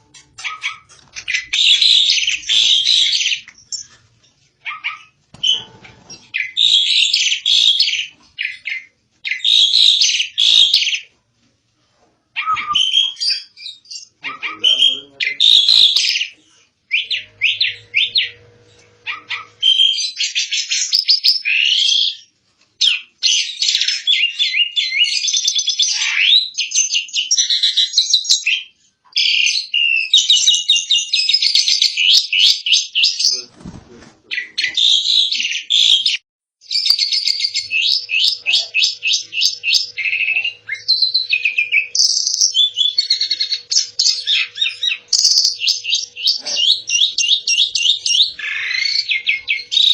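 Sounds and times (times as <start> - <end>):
starling singing: 0.0 - 4.0, 4.6 - 11.1, 12.4 - 33.5, 34.3 - 49.9.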